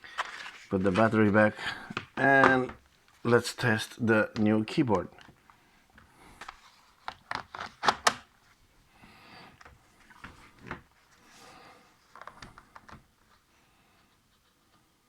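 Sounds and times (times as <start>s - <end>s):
plastic clicks and knocks: 6.0s - 8.3s.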